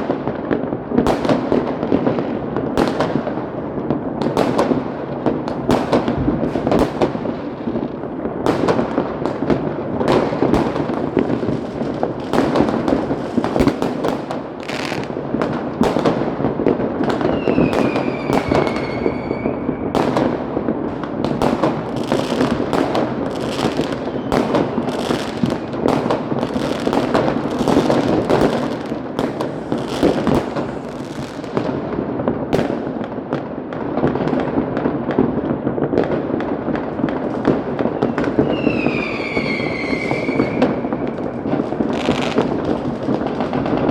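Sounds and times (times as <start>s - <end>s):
fireworks and firecrackers banging: 0.0s - 43.9s
whistling firework: 8.5s - 31.6s, 36.8s - 43.9s.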